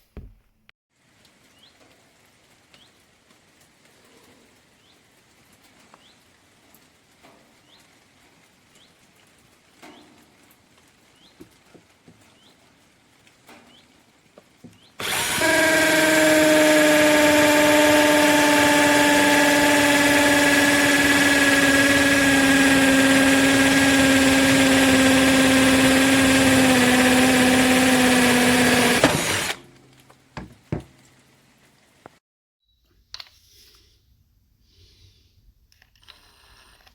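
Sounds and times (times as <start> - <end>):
cordless drill motor whining: 15.0 - 29.6.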